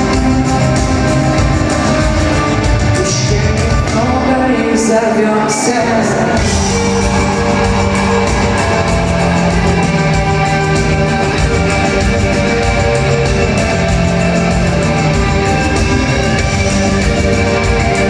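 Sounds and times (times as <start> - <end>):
steady drum beat: 0.0 - 4.4, 6.4 - 18.0
electric guitar long notes: 5.4 - 18.0.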